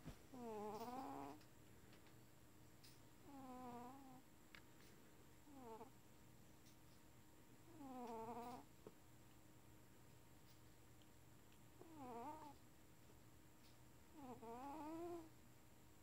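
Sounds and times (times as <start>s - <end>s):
cat snoring: 0.3s - 1.4s, 3.2s - 4.2s, 5.5s - 5.9s, 7.7s - 8.7s, 11.8s - 12.6s, 14.1s - 15.3s.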